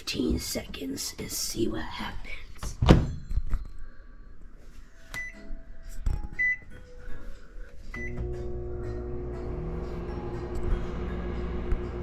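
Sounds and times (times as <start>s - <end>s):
microwave keypad beeps: 8.0s - 8.2s
microwave oven humming: 8.0s - 12.0s.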